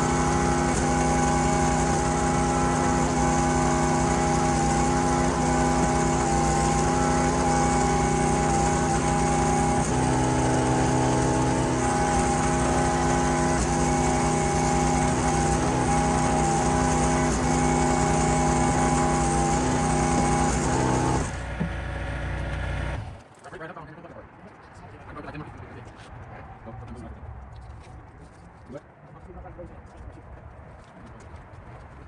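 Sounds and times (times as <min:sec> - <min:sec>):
small gasoline engine running: 0:00.0 - 0:23.2.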